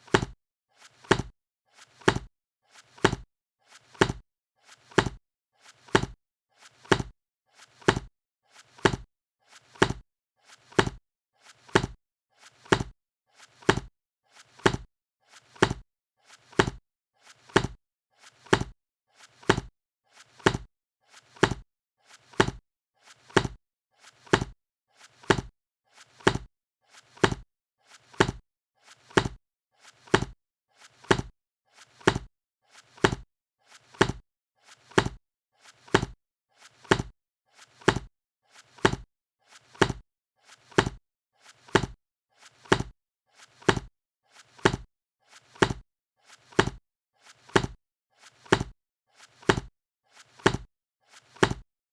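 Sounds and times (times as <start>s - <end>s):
book being shut: 50.4s - 50.6s.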